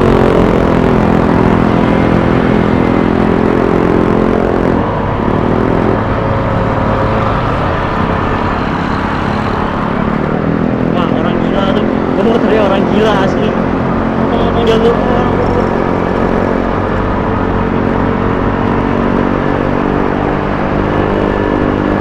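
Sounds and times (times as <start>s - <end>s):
scooter engine running: 0.0s - 22.0s
steady rushing noise: 0.0s - 22.0s.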